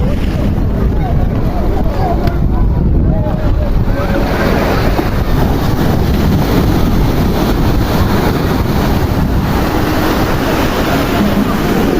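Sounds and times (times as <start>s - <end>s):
ocean surf: 0.0s - 11.9s
wind blowing across microphone: 0.0s - 11.9s.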